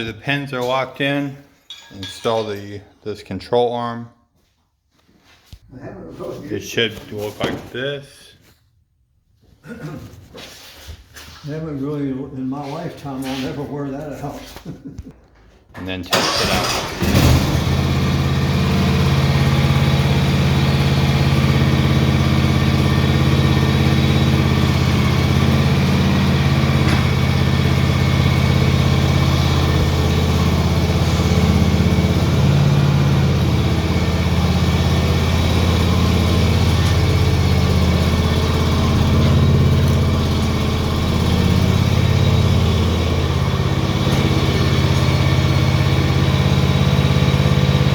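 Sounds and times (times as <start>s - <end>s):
lawn tractor engine running: 16.1s - 47.9s.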